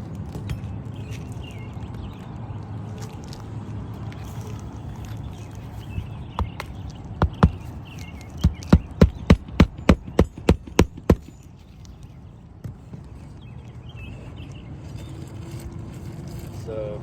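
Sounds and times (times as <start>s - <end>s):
hammer driving nails: 6.4s - 7.7s, 8.4s - 11.3s.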